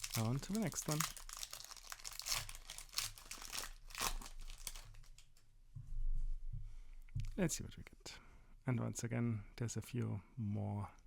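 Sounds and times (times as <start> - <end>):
foil wrapper crinkling and tearing: 0.0 - 5.3.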